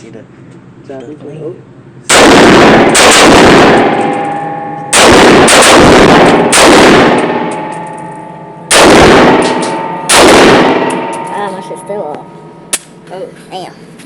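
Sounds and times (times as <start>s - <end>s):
loud gunshots with echo: 2.1s - 11.8s.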